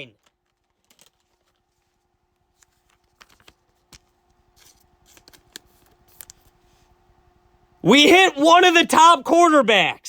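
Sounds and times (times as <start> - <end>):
trading cards clicking and rustling: 0.2 - 6.8.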